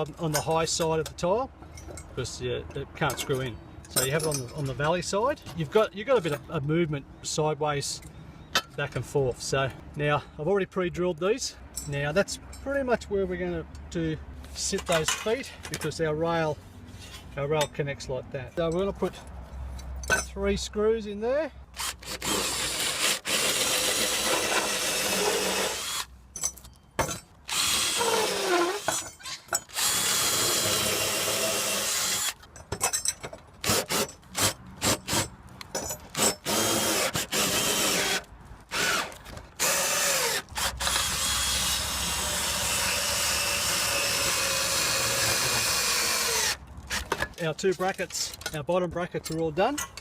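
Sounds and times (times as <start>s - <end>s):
power drill driving screws: 21.8s - 26.1s, 27.5s - 32.4s, 33.6s - 35.3s, 36.2s - 47.1s.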